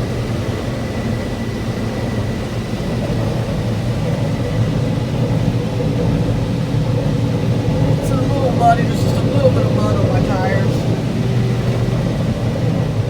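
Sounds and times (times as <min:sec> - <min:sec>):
combine harvester running: 0:07.4 - 0:12.7.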